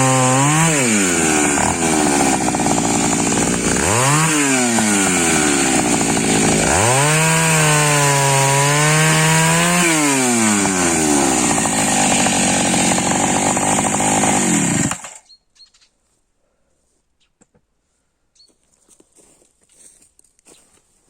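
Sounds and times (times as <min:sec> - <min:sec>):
chainsaw engine revving: 0:00.0 - 0:15.2.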